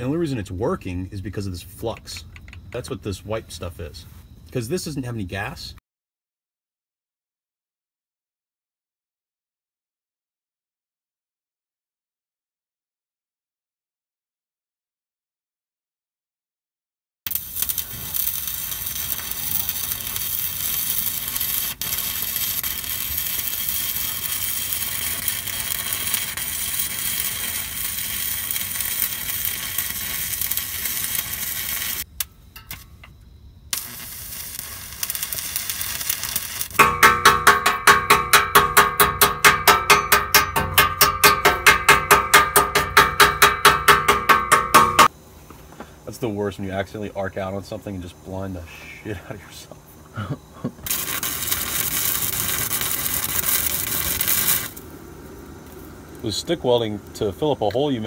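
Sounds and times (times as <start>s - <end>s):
welding arc crackling: 17.3s - 32.9s, 33.7s - 45.1s, 50.8s - 58.0s
buzzing tone: 17.3s - 45.1s, 50.9s - 54.9s.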